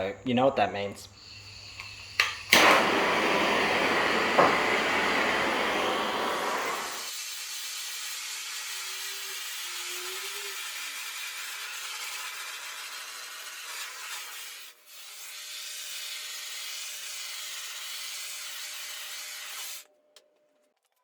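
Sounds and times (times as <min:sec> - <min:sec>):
handheld power tool running: 0:02.2 - 0:07.2.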